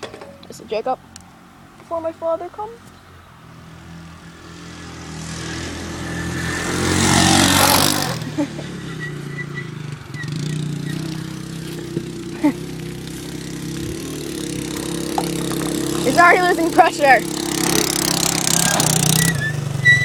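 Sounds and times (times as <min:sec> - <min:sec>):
motor running: 0:13.5 - 0:19.3.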